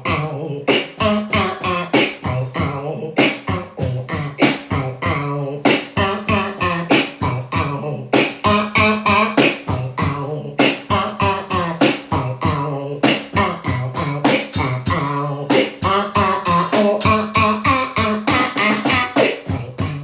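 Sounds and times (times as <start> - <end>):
beatboxing percussive hits: 0.0 - 20.0
low voiced bass line: 0.0 - 20.0.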